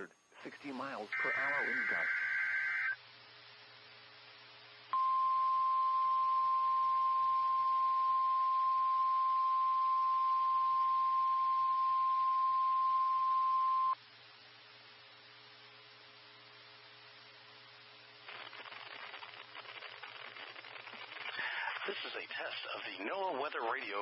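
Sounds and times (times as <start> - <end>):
digital data burst: 0.6 - 3.0, 18.3 - 22.8
steady alarm tone: 1.1 - 3.0.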